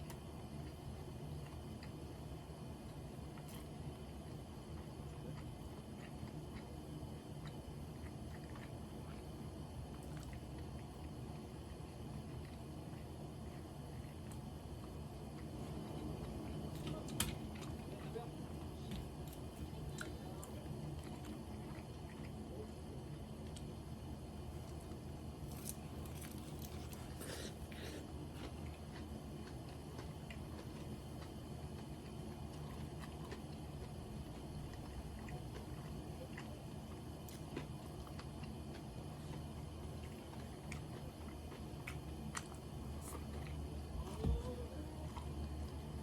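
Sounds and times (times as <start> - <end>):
small crunches and mouth clicks: 0.0 - 22.4, 24.5 - 46.0
person chewing food: 0.0 - 46.0
steady low hum: 0.0 - 46.0.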